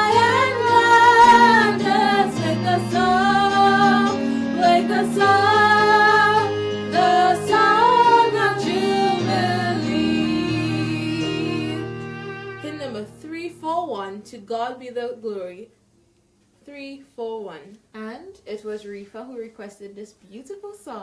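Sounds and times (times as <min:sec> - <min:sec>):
women singing a hymn: 0:00.0 - 0:13.2
instrumental accompaniment: 0:00.0 - 0:14.4.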